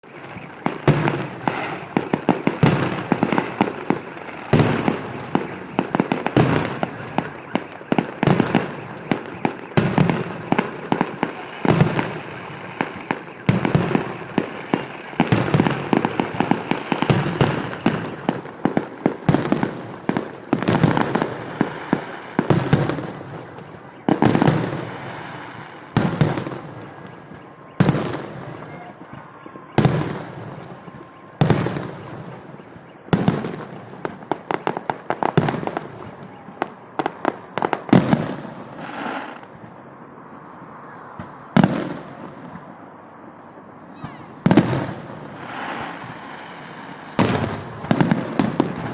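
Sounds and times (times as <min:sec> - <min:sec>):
firework shells bursting with bangs: 0:00.0 - 0:39.8, 0:44.0 - 0:48.9
firework crackling: 0:00.0 - 0:48.9.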